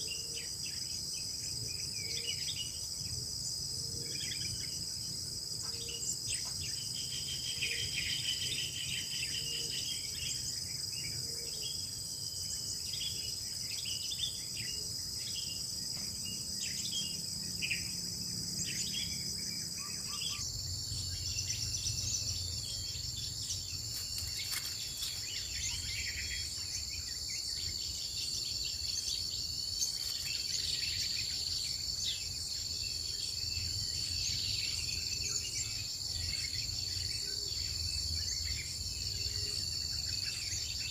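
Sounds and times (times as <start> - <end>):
insects trilling: 0.0 - 40.9
bird chirps and calls: 18.6 - 31.4.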